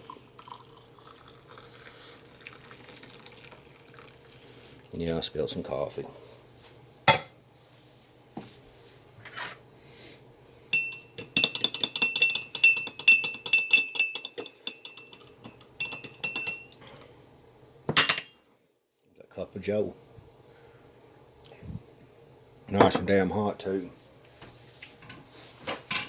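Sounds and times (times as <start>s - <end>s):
spoon clinking in coffee cup: 10.8s - 16.8s.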